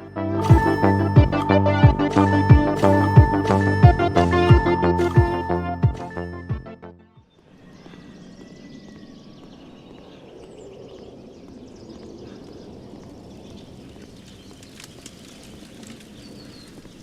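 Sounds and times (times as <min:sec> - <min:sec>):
bird chirps: 0:00.0 - 0:06.5.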